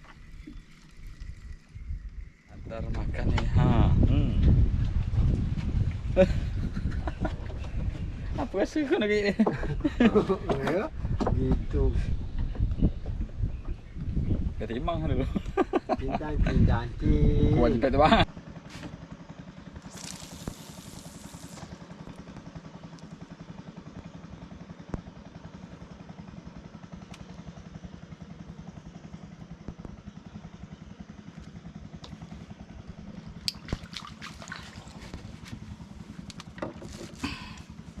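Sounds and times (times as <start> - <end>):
boat engine puttering: 0.0 - 4.0, 6.5 - 13.8, 31.2 - 38.0.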